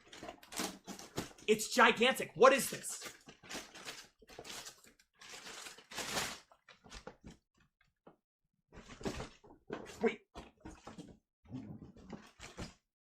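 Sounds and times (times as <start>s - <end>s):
cardboard rustling and scraping: 3.1s - 7.4s, 8.8s - 11.1s.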